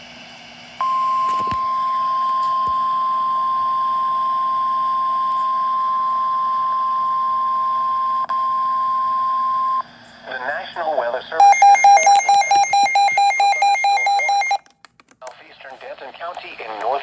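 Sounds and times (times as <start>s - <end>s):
steady loud alert beep: 11.4s - 14.6s.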